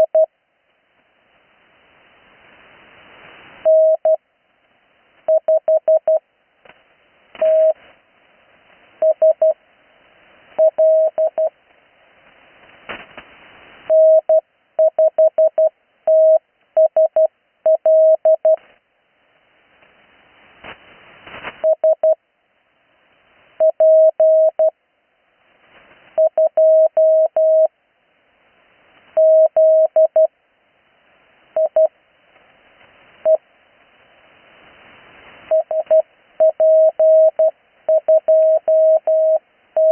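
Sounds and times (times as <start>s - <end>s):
morse code beeps: 0.0s - 0.3s, 3.6s - 4.2s, 5.3s - 6.2s, 7.4s - 7.8s, 9.0s - 9.6s, 10.6s - 11.5s, 13.9s - 18.6s, 21.6s - 22.2s, 23.6s - 24.7s, 26.2s - 27.7s, 29.2s - 30.3s, 31.6s - 31.9s, 33.2s - 33.4s, 35.5s - 39.9s
sharp static crackles: 0.0s - 24.7s, 25.3s - 39.9s
radio band hiss: 19.7s - 21.7s.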